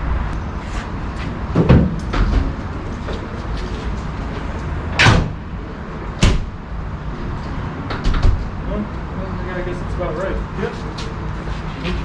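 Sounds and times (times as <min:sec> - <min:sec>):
low rumble: 0:00.0 - 0:00.6.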